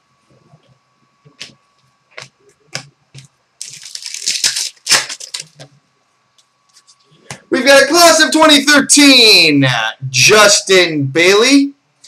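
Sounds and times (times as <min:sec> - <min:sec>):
sharp card snap: 0:04.3 - 0:05.6.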